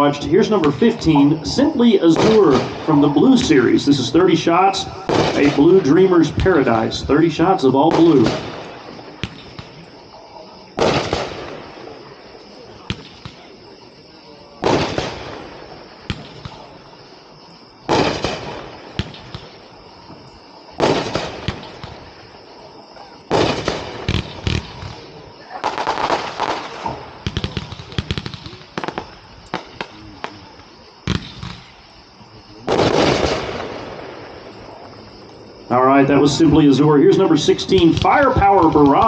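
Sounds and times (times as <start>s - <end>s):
firework shots and bursts: 0.3s - 4.1s, 4.8s - 7.2s, 7.8s - 35.7s, 37.2s - 39.0s
rapid sharp firework pops: 7.9s - 9.9s, 10.8s - 11.6s, 12.8s - 13.5s, 14.6s - 15.4s, 16.0s - 16.7s, 17.9s - 20.2s, 20.8s - 22.1s, 23.3s - 31.8s, 32.6s - 34.2s.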